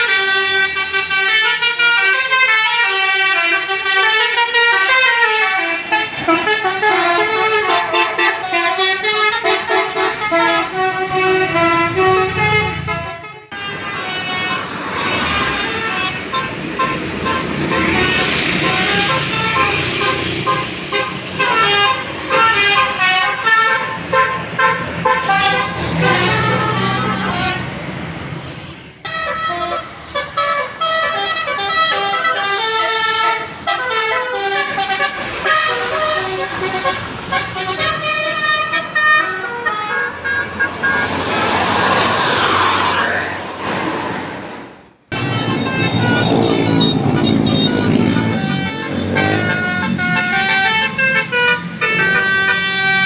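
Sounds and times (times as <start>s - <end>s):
bus musical horn toots: 0.0s - 27.9s, 29.0s - 42.2s, 45.1s - 53.0s
vehicle engine noise: 3.4s - 53.0s
vehicle passing close: 40.4s - 50.6s.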